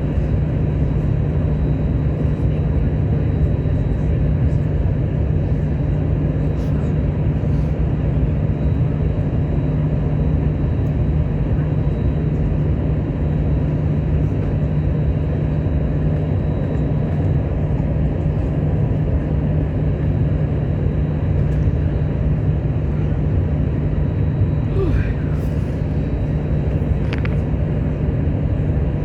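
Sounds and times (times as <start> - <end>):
jet cabin engine drone: 0.0 - 29.0.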